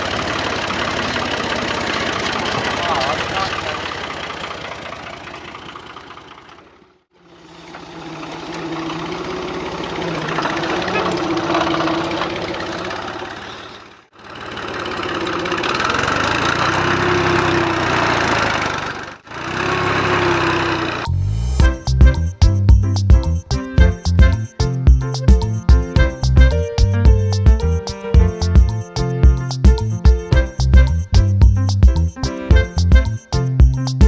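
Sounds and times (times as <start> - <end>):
small motor buzzing: 14.6 - 21.1.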